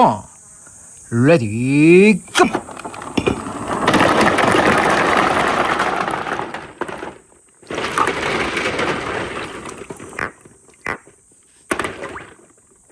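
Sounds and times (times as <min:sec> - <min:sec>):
marbles rolling and rattling: 0:02.5 - 0:12.6.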